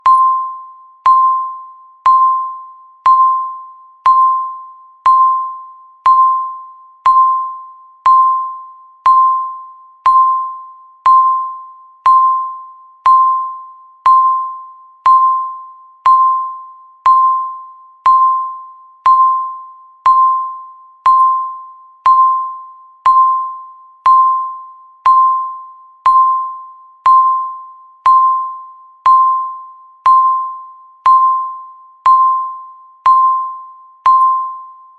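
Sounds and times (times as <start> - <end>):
timer tick beeps: 0.0 - 34.9.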